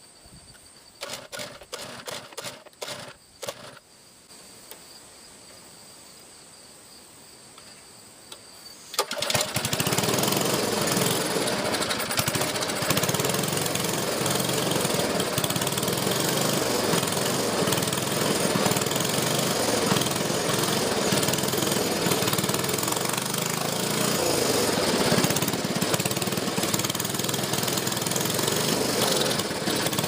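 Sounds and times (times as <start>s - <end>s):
small engine running loudly: 1.0s - 3.8s, 9.0s - 30.0s.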